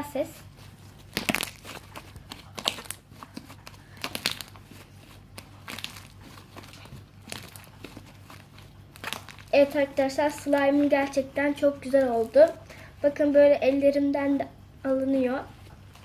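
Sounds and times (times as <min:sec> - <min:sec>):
slime crackling pops: 0:01.1 - 0:03.0.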